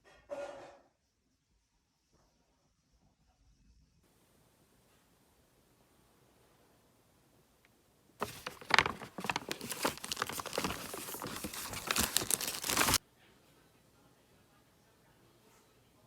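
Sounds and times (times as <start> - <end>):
wrapping crinkling and rustling: 8.2 - 13.0.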